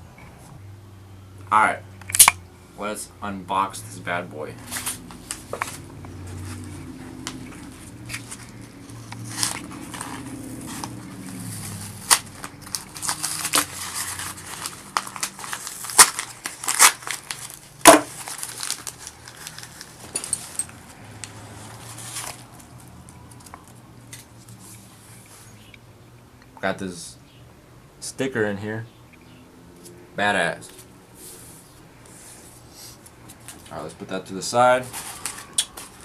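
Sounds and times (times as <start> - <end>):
sharp plastic clicks: 2.0 - 2.4
packaging crinkling: 6.5 - 23.5.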